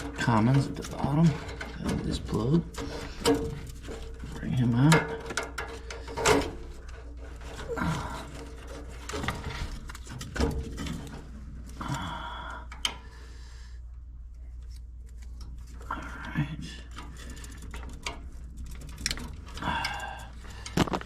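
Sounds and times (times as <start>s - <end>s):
wire connectors clicking: 0.0s - 11.8s, 16.9s - 21.0s
low steady hum: 0.0s - 21.0s.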